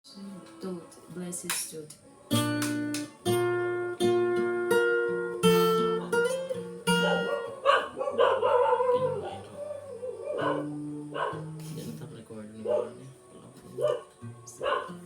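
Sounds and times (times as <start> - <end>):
acoustic guitar strumming: 0.1 - 15.0
wavering howl-like voice: 7.0 - 11.4.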